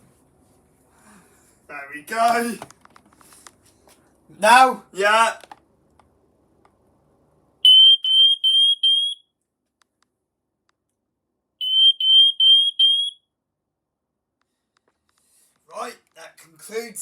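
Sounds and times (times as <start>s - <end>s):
high-pitched alarm beeps: 7.7s - 9.2s, 11.6s - 13.2s.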